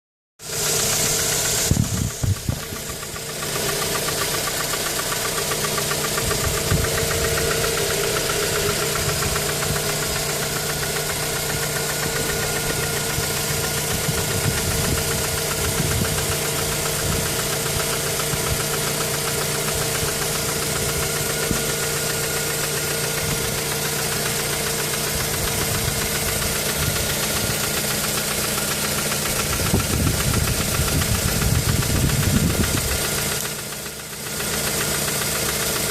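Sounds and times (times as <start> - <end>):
car engine idling with knocking: 0.4 - 35.9
uneven low thumps: 6.1 - 17.7.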